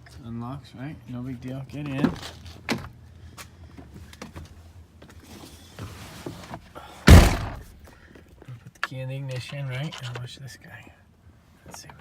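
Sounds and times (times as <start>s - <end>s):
truck door shutting: 7.1s - 7.7s
light clicks and rustling: 8.0s - 10.4s, 11.6s - 12.0s.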